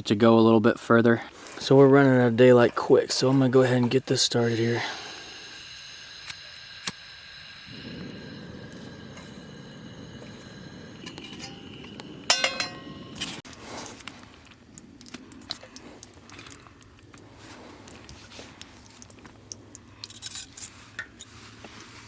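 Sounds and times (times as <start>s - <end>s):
pan clanging: 11.1s - 13.4s
utensils and dishes clinking: 11.1s - 13.4s.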